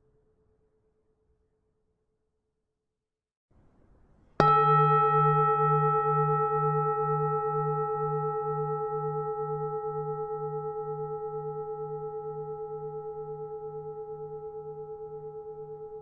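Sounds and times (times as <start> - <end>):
temple bell ringing: 4.4 - 12.9.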